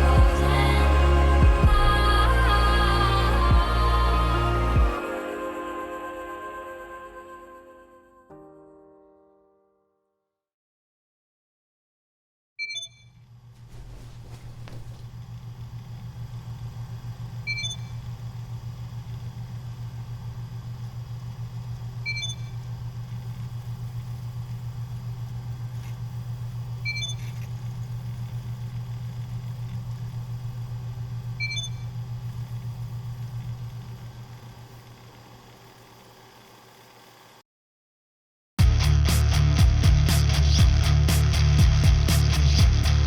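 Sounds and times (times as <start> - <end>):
low pulsing hum: 0.0 - 5.1, 13.4 - 34.7.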